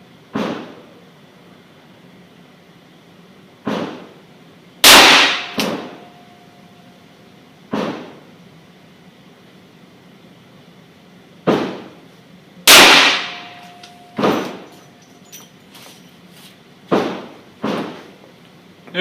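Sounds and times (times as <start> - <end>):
revolver shots: 4.8 - 6.0, 12.7 - 14.7.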